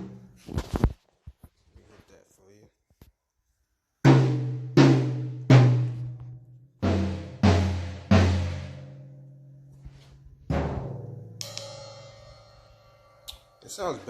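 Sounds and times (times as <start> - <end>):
drum toms struck: 4.1 - 6.2, 6.8 - 9.0, 10.5 - 13.1.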